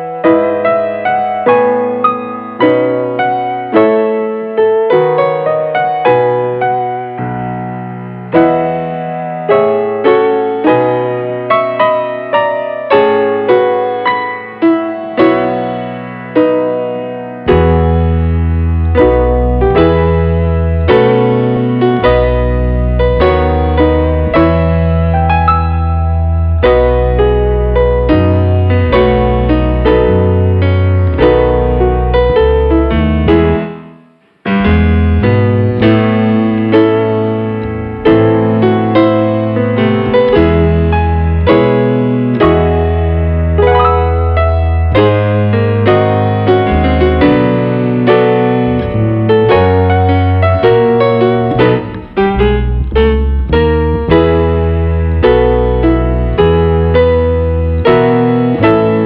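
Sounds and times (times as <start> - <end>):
piano notes and chords: 0.0 - 59.0
deep held bass: 17.5 - 33.7, 34.5 - 59.0.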